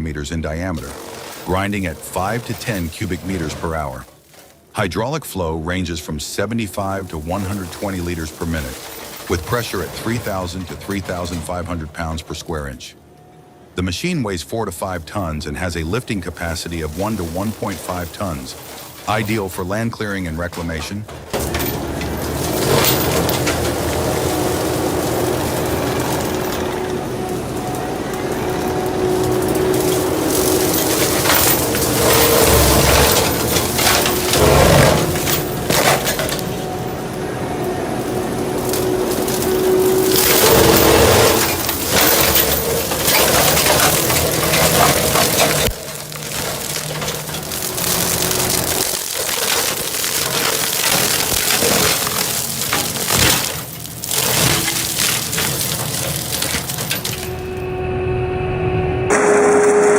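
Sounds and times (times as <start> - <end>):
machine crushing wood: 0.0 - 57.8, 59.1 - 59.9
engine droning: 5.5 - 59.9
steady machine hum: 21.3 - 59.9.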